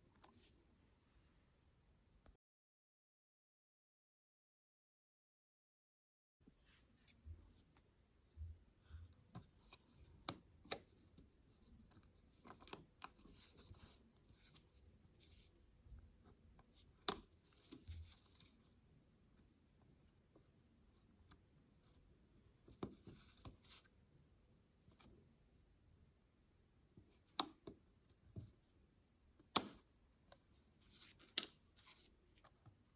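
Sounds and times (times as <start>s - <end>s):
sharp plastic snaps: 29.5s - 29.8s.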